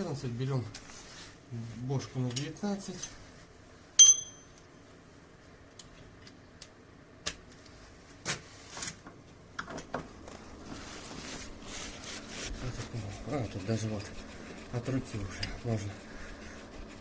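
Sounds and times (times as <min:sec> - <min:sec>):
rubbing scrape: 0:10.7 - 0:17.0.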